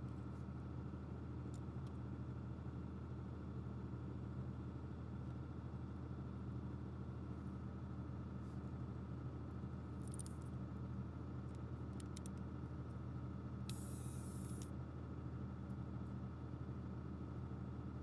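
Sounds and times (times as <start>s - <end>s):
steady low hum: 13.4s - 14.7s.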